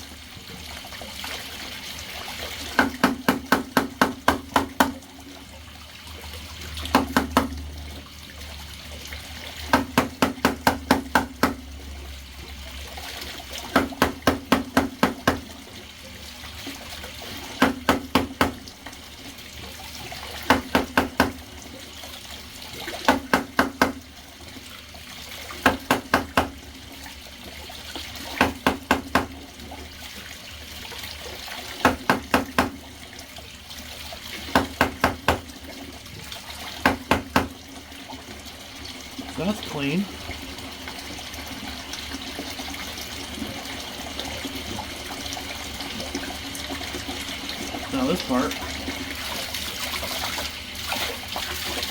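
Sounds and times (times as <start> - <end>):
water running from a tap: 0.0 - 51.9
sharp knocks on hard surface: 2.8 - 5.0, 6.9 - 7.6, 9.7 - 11.6, 13.8 - 15.5, 17.6 - 18.6, 20.5 - 21.4, 23.1 - 24.0, 25.6 - 26.6, 28.4 - 29.4, 31.8 - 32.8, 34.5 - 35.5, 36.8 - 37.6.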